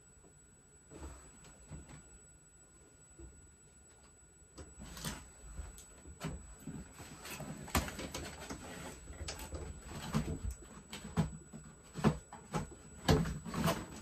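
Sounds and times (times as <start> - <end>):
objects being handled and moved: 3.8 - 14.0.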